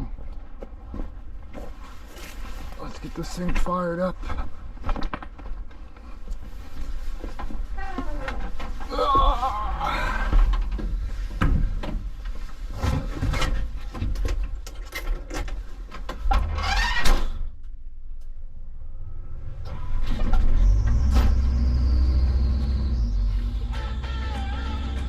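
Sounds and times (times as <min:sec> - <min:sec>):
knocks and clatter in a cab: 0:10.3 - 0:16.9
diesel engine starting and rumbling: 0:18.3 - 0:25.0.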